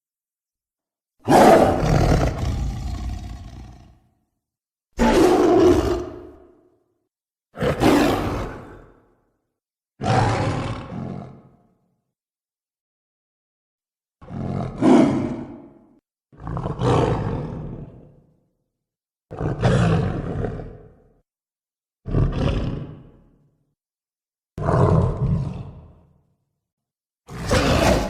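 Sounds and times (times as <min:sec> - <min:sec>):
creature roars: 0:01.2 - 0:04.1, 0:05.0 - 0:06.7, 0:07.6 - 0:09.1, 0:10.0 - 0:11.6, 0:14.2 - 0:18.2, 0:19.3 - 0:21.1, 0:22.0 - 0:23.4, 0:24.6 - 0:26.1, 0:27.3 - 0:28.0.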